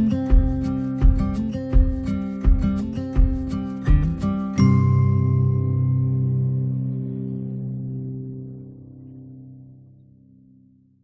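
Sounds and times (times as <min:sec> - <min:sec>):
instrumental music with steady beat: 0:00.0 - 0:08.3.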